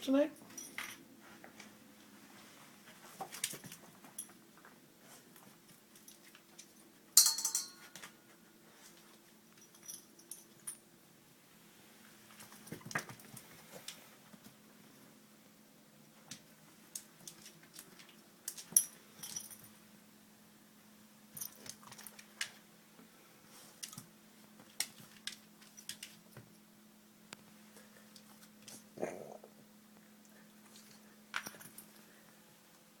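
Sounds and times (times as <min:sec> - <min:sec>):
light clicks and clinks: 0:05.4 - 0:08.2, 0:08.8 - 0:10.8, 0:16.8 - 0:19.8, 0:21.3 - 0:22.6, 0:30.6 - 0:32.1.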